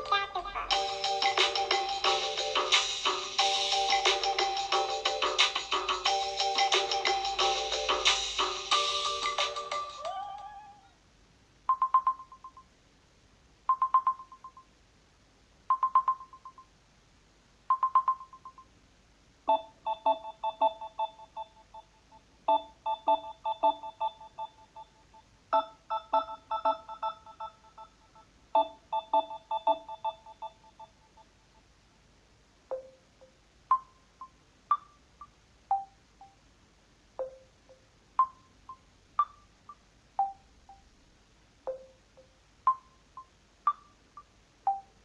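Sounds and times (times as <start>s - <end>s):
phone ringtone melody: 0.7s - 10.6s, 11.7s - 12.6s, 13.7s - 14.6s, 15.7s - 16.7s, 17.7s - 18.6s, 19.5s - 21.9s, 22.5s - 24.9s, 25.6s - 28.0s, 28.6s - 31.2s.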